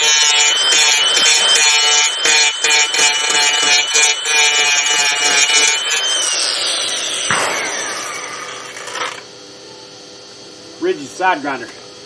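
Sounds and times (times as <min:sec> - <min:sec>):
angle grinder whining: 0:00.0 - 0:09.4.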